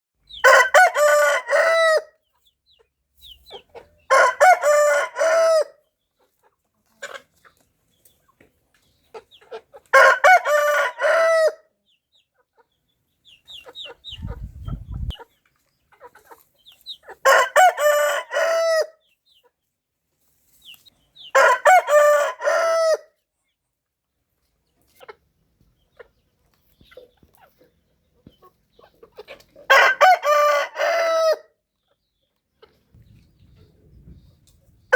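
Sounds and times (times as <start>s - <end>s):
rooster crowing: 0.4s - 2.1s, 4.1s - 5.8s, 10.0s - 11.6s, 17.3s - 18.9s, 21.4s - 23.1s, 29.7s - 31.5s
hen clucking softly: 6.2s - 10.0s, 12.0s - 17.3s, 24.6s - 29.8s, 31.7s - 34.9s.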